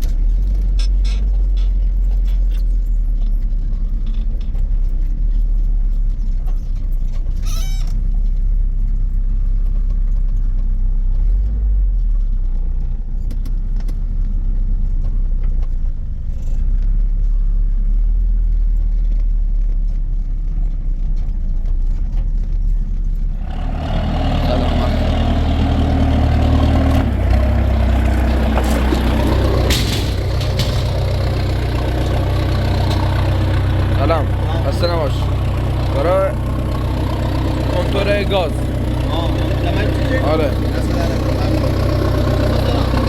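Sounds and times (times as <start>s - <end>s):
car engine and road rumble: 0.0s - 43.0s
short rattle: 23.8s - 43.0s.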